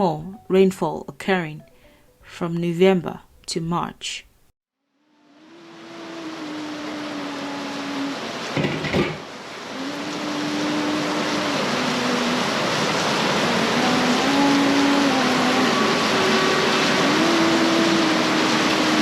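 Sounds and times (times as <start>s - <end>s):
slow tune of long notes: 0.0s - 3.8s, 4.8s - 8.6s, 9.2s - 19.0s
heavy rain: 5.2s - 19.0s.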